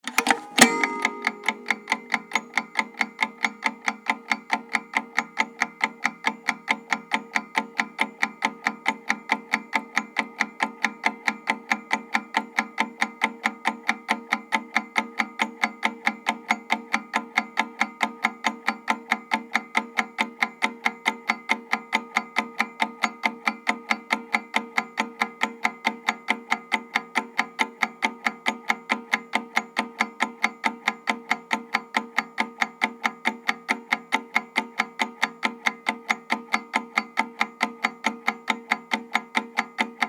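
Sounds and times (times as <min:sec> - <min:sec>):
clock ticking: 0:00.1 - 0:02.3
steady ringing tone: 0:00.1 - 0:02.3.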